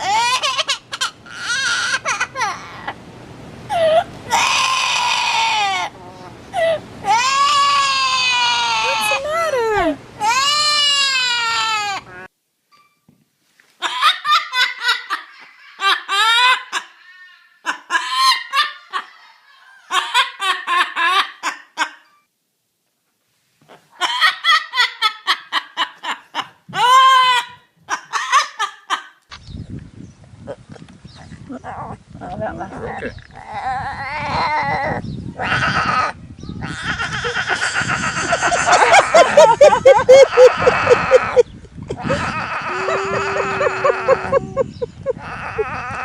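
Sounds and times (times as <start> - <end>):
laughter-like pitched bursts: 36.9 - 46.0.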